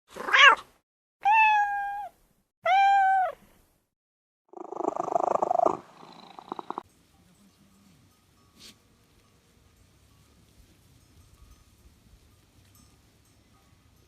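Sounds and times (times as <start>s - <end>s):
cat meowing: 0.2s - 3.4s.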